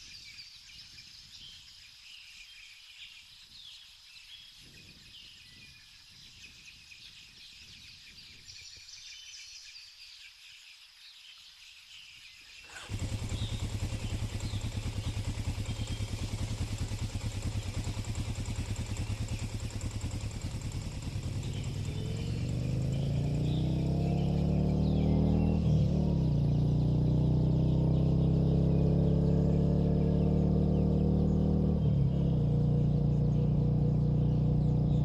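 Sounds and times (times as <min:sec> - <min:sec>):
birds chirping faintly: 0:00.0 - 0:35.0
small motorcycle engine running: 0:12.7 - 0:35.0.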